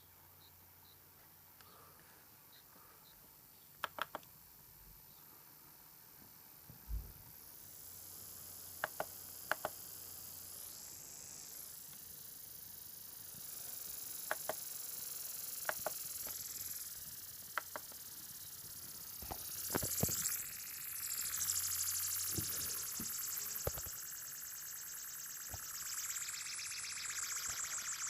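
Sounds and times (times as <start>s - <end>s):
steady high hiss: 0.0s - 28.0s
faint wavering squeal: 19.4s - 28.0s.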